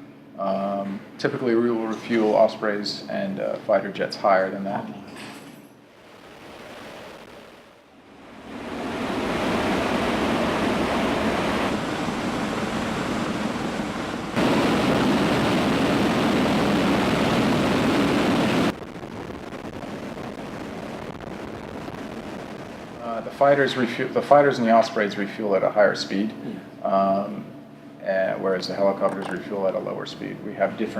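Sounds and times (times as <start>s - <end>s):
aircraft engines and airflow: 5.9s - 18.8s.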